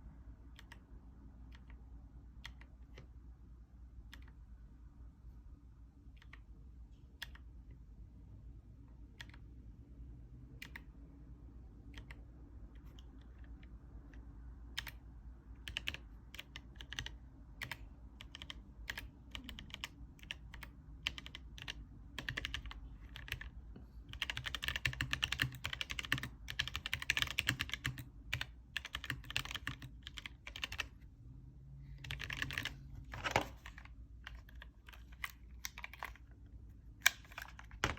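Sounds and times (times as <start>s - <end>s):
mechanical keyboard typing: 0.5s - 3.2s, 7.2s - 7.6s, 9.0s - 9.5s, 10.5s - 11.0s, 11.8s - 15.0s, 15.6s - 23.5s, 24.1s - 31.0s, 31.9s - 36.4s, 37.0s - 37.9s.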